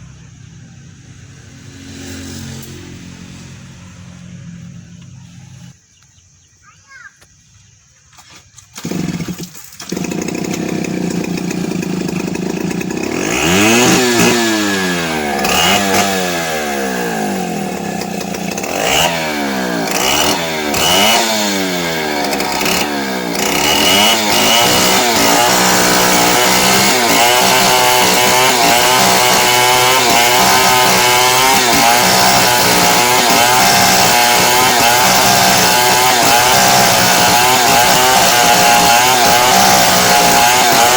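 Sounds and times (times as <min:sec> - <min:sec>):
chainsaw revving: 0:01.4 - 0:03.9, 0:08.7 - 0:40.9.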